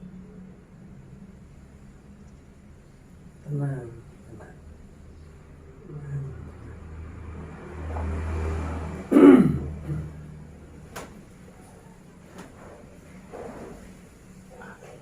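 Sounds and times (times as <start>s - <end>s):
person coughing: 9.1s - 10.2s.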